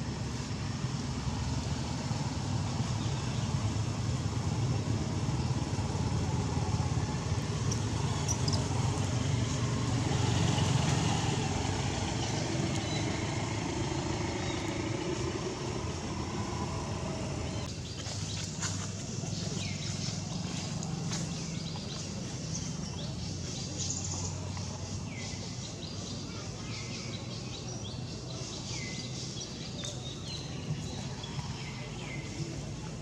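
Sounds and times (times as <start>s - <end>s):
motor engine running: 0.8s - 25.0s.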